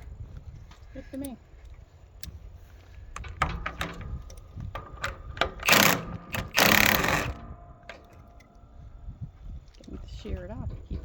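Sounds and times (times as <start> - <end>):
sharp metal clicks: 3.1 - 8.7
tool rattling bursts: 3.2 - 8.6.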